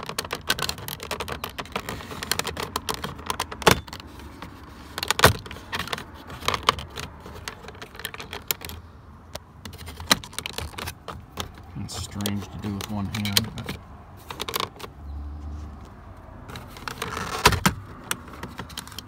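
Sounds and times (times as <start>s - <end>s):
plastic switch clicking and rattling: 0.0s - 4.1s.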